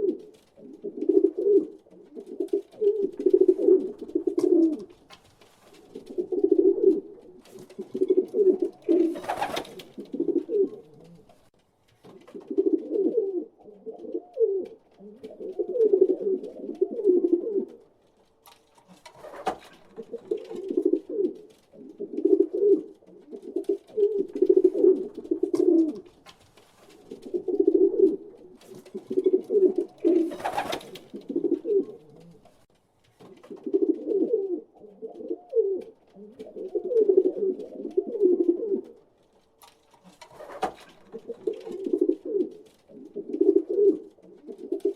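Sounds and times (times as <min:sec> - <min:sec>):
pigeons cooing: 0:00.0 - 0:05.1, 0:05.8 - 0:11.5, 0:12.2 - 0:17.9, 0:18.9 - 0:26.2, 0:27.0 - 0:32.6, 0:33.4 - 0:39.0, 0:40.0 - 0:44.9
short rustling noises: 0:25.9 - 0:27.5.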